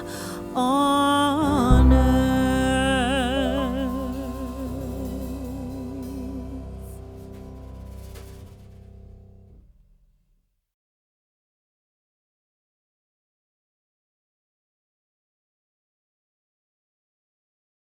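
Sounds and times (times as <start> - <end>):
person singing long note: 0.0 - 7.5
sustained accompaniment: 0.0 - 9.7.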